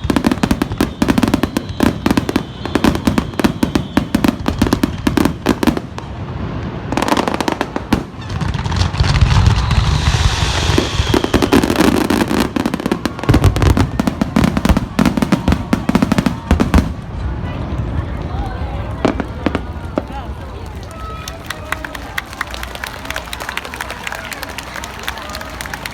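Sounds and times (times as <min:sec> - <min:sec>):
deep firework booms: 0:00.0 - 0:18.0
firework shell bursts and crackling: 0:07.0 - 0:17.0.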